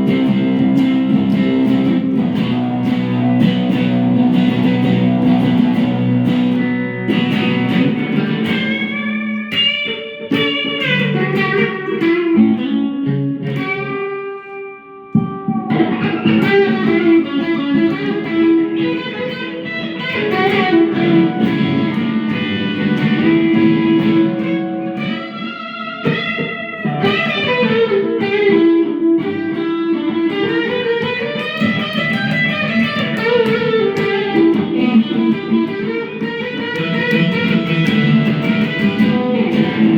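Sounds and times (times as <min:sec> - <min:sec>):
electric guitar lead melody: 0:00.0 - 0:39.9.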